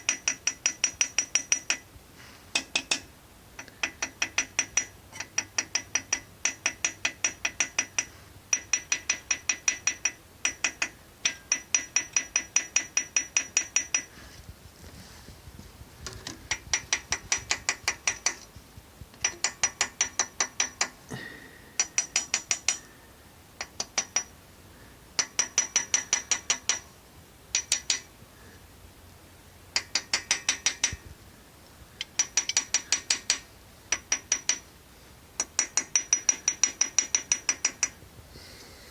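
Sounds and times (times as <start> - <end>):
rapid metallic tapping: 2.5 - 14.1, 15.9 - 21.0, 21.8 - 22.9, 25.2 - 26.9, 27.5 - 28.1, 29.8 - 31.1, 32.0 - 34.7, 35.4 - 38.0.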